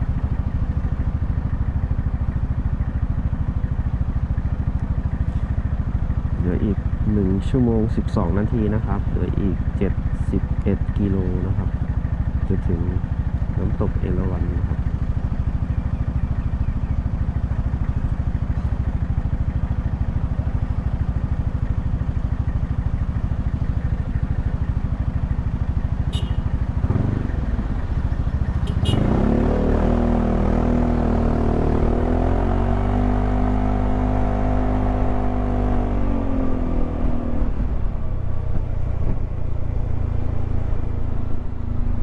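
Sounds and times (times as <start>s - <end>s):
scooter engine and road rumble: 0.0s - 42.0s.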